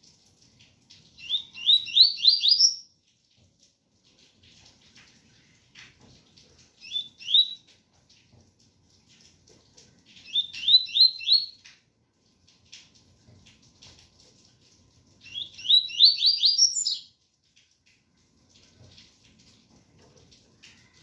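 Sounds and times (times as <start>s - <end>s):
faint rain: 0.0s - 21.0s
bird whistling song: 1.2s - 2.8s, 6.8s - 7.6s, 10.2s - 11.6s, 15.2s - 17.1s.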